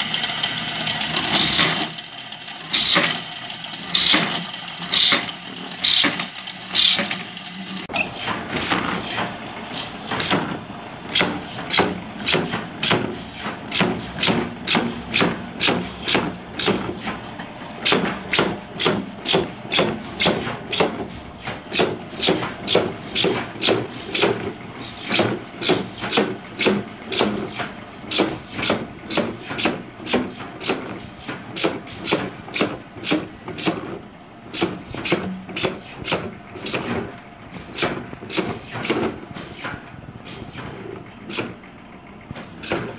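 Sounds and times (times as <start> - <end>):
drill boring into plastic pipe: 2.7 - 3.1, 4.9 - 7.1.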